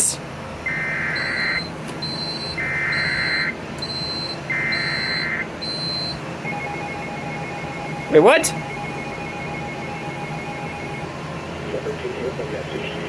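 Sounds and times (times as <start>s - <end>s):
short high electronic beeps: 0.7s - 11.1s
low buzzing tones: 0.7s - 11.5s
steady electronic tone: 0.7s - 11.5s.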